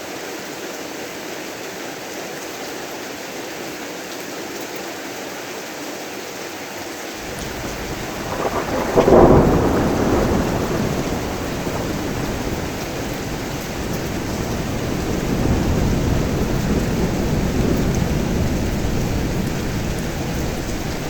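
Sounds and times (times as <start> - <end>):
heavy rain: 6.9 - 21.0
thunder rumbling: 7.2 - 21.0.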